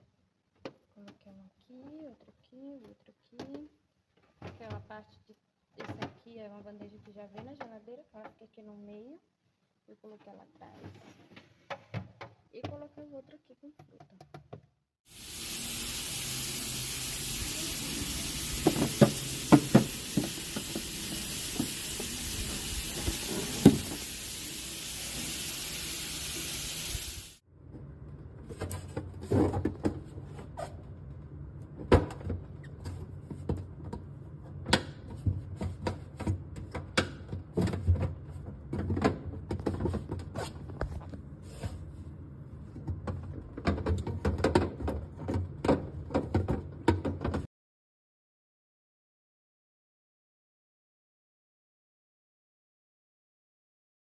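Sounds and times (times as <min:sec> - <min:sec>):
steady hiss: 0:15.1 - 0:27.4
plastic boxes knocking and clattering: 0:34.6 - 0:40.4, 0:42.8 - 0:47.5.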